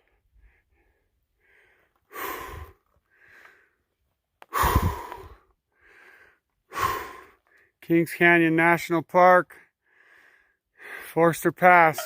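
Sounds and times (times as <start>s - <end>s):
person breathing hard: 0.0s - 7.8s, 9.8s - 11.1s.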